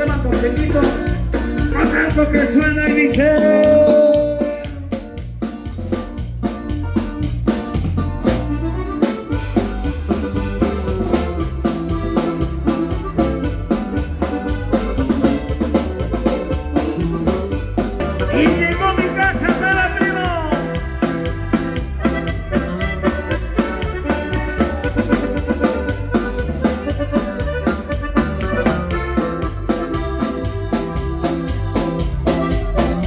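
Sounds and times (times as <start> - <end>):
bass line: 0.0 - 33.0
drum kit steady beat: 0.0 - 33.0
melody line: 1.9 - 4.9.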